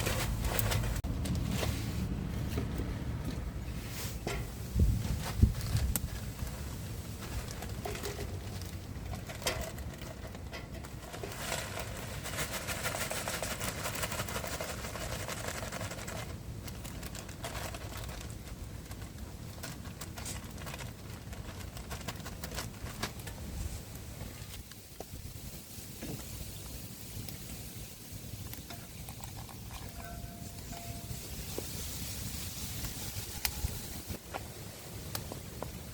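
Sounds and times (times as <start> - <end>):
wind buffeting microphone: 4.4 - 6.5.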